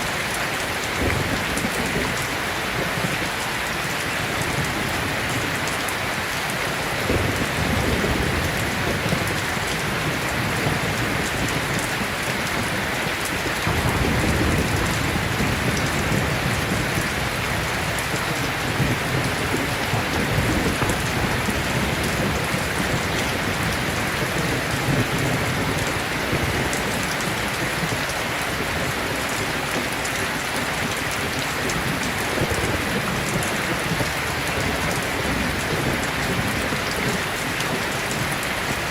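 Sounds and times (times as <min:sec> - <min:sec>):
heavy rain: 0:00.0 - 0:38.9
rolling thunder: 0:00.8 - 0:03.6, 0:07.0 - 0:28.0.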